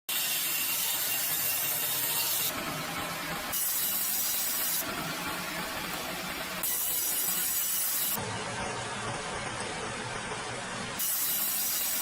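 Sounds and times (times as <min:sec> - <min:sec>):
power saw cutting timber: 0:00.1 - 0:08.2.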